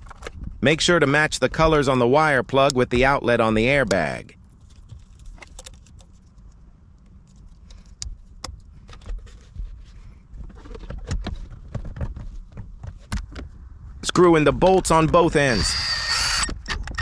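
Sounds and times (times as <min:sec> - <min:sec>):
clicks and rattles of plastic parts: 0:00.0 - 0:00.5, 0:04.7 - 0:06.6, 0:10.4 - 0:13.5.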